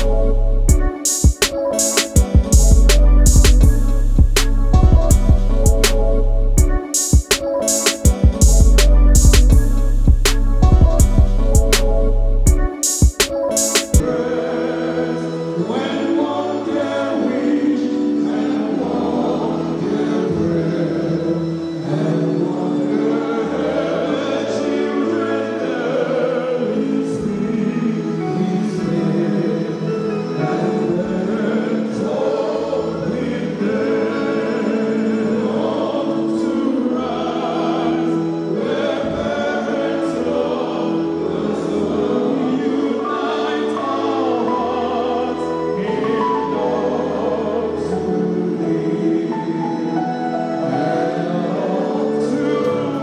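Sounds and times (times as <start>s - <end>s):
held bass notes: 0.0s - 0.9s, 2.4s - 6.8s, 8.2s - 12.7s
choir singing gospel: 0.0s - 53.0s
light regular beat: 0.7s - 6.0s, 6.6s - 11.9s, 12.5s - 14.0s.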